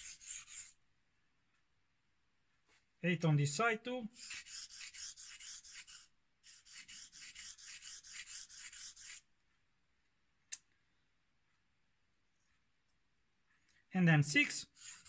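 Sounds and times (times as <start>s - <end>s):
razor scraping on whetstone: 0.0s - 0.8s, 4.2s - 9.3s, 14.4s - 15.0s.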